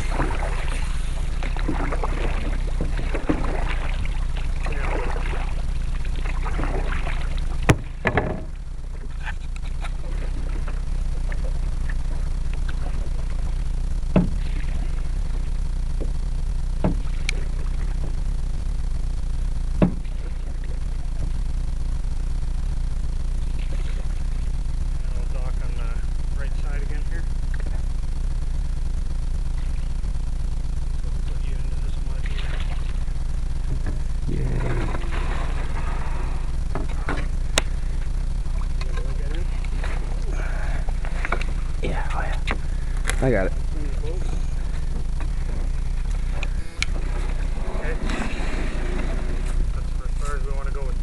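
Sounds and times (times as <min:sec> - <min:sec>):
paddle splashing water: 0:00.0 - 0:16.2, 0:16.8 - 0:18.3, 0:19.8 - 0:21.4, 0:23.4 - 0:24.5, 0:32.0 - 0:49.6
low rumble: 0:00.0 - 0:51.0
knocks on canoe: 0:07.6 - 0:08.6, 0:14.1 - 0:14.4, 0:16.8 - 0:17.1, 0:19.8 - 0:20.2.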